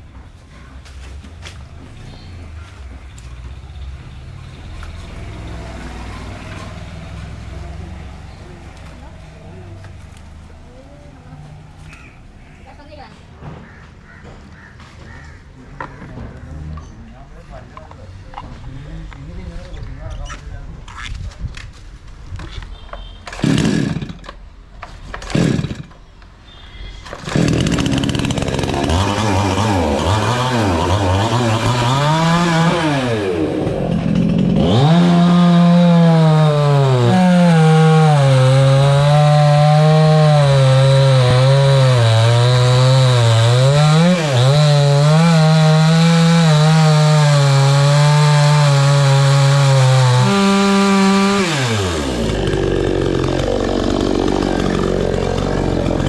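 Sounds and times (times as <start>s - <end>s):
chainsaw engine revving: 23.3s - 24.3s, 25.2s - 25.9s, 27.1s - 56.0s.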